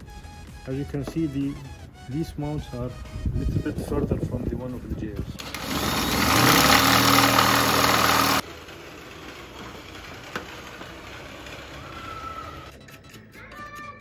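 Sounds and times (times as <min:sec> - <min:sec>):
electric drill running: 0:05.4 - 0:12.7.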